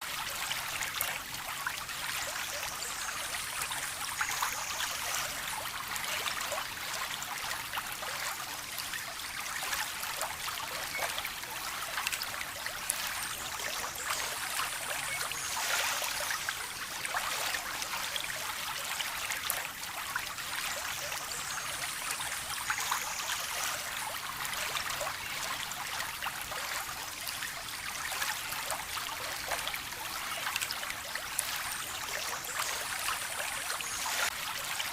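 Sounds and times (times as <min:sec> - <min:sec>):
water trickling and splashing: 0:00.0 - 0:34.9.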